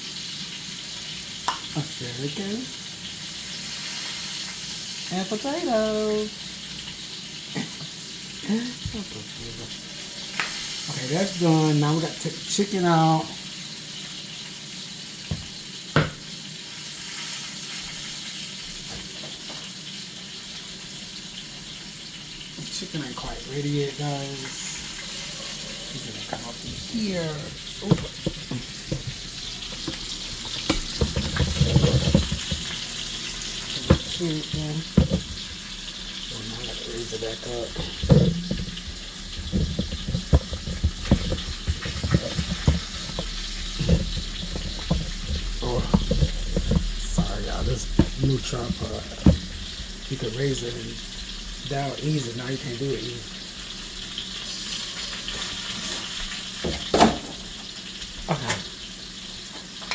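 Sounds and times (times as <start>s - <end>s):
chicken sizzling in a skillet: 0.0s - 59.9s
knocks: 15.3s - 16.2s, 27.9s - 33.0s, 34.8s - 35.6s, 37.7s - 49.9s.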